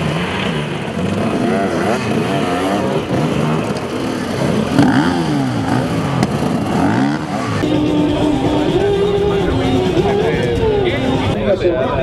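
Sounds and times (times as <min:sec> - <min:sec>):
dirt bike engine revving: 0:00.0 - 0:10.4.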